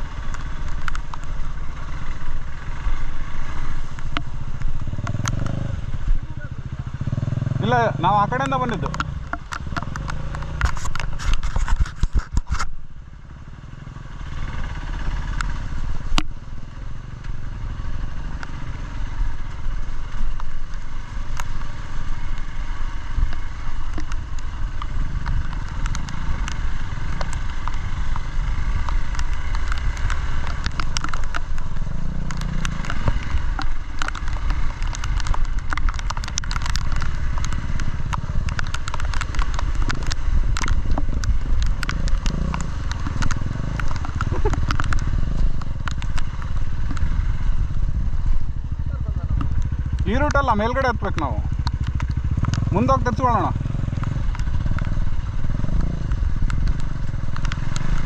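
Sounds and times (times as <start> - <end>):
motorcycle engine running: 0.0 - 58.0
clicks and rattles: 23.3 - 47.1.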